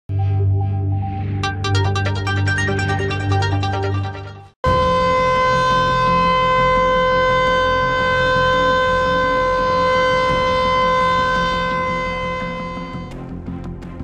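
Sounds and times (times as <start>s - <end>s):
warning siren steady tone: 4.6s - 13.2s.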